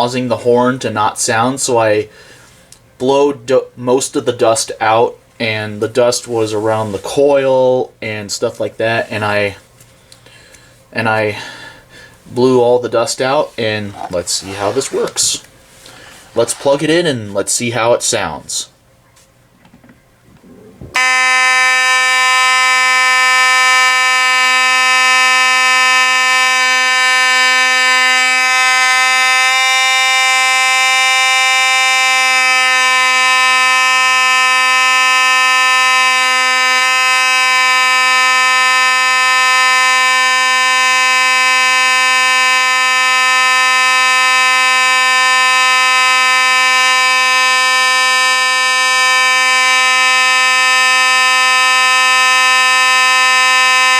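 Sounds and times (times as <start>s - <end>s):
fire alarm horn buzzing: 0.0s - 7.2s, 8.5s - 9.6s, 10.4s - 17.1s, 20.9s - 53.9s.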